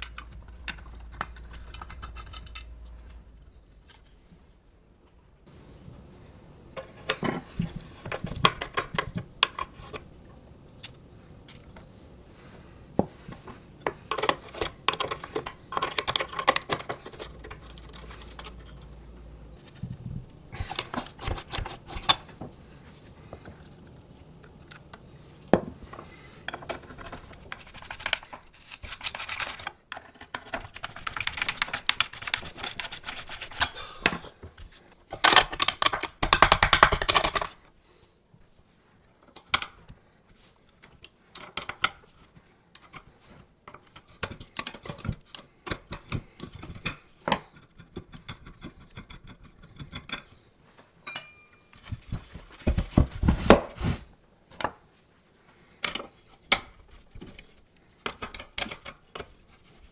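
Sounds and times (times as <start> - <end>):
metal parts clicking and rattling: 0.0 - 4.3, 35.2 - 37.6.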